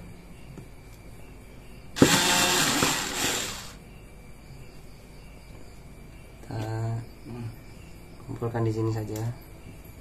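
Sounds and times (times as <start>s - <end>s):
small electric drill running: 2.0s - 3.8s.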